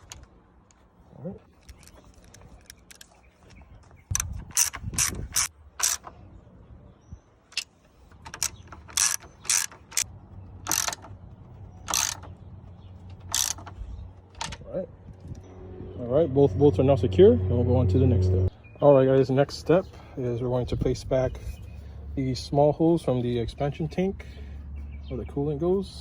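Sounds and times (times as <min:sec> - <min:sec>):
ratchet wrench clicking: 0:04.1 - 0:06.1, 0:07.5 - 0:10.1, 0:10.7 - 0:11.1, 0:11.9 - 0:12.3, 0:13.2 - 0:13.8.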